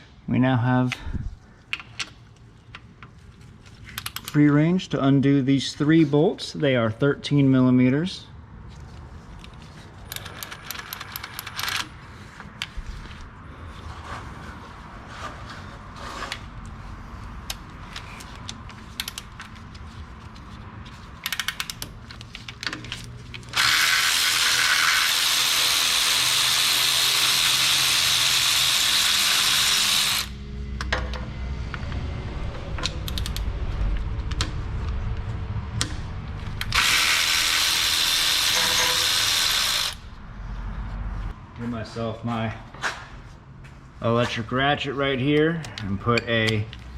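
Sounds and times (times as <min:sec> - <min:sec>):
ratchet clicks: 0:04.0 - 0:04.4, 0:10.1 - 0:11.9, 0:18.4 - 0:19.5, 0:21.2 - 0:30.3, 0:33.0 - 0:33.4
electric ratchet spinning: 0:10.1 - 0:12.0, 0:23.3 - 0:30.4, 0:36.6 - 0:40.1
tool clatter: 0:38.4 - 0:39.3.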